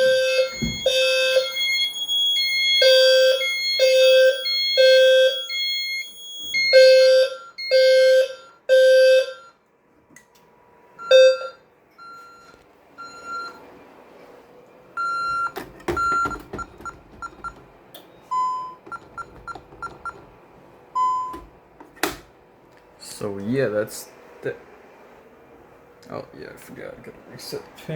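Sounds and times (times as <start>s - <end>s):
fire alarm horns: 0.0s - 9.6s, 11.0s - 13.5s.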